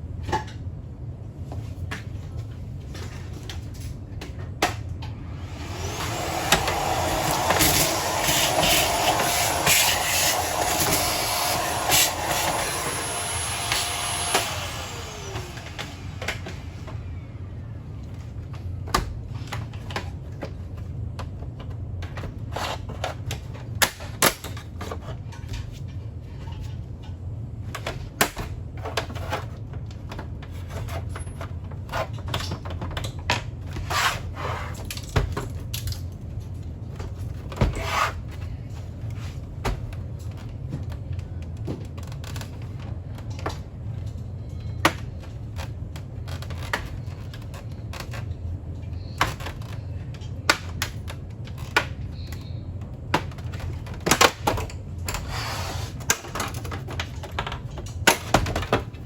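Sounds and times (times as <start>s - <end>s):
electric motor whining: 5.3s - 16.4s.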